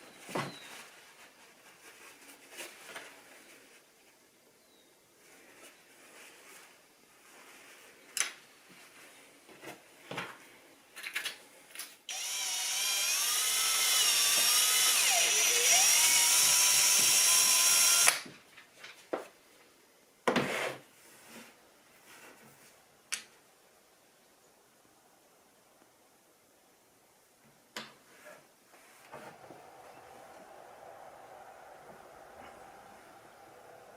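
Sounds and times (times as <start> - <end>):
electric drill whining: 12.1 - 18.2.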